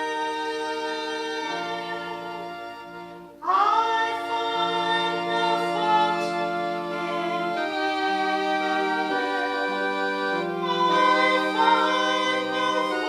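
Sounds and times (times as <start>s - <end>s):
organ holding chords: 0.0s - 13.0s
singing: 3.4s - 9.9s, 10.6s - 13.0s.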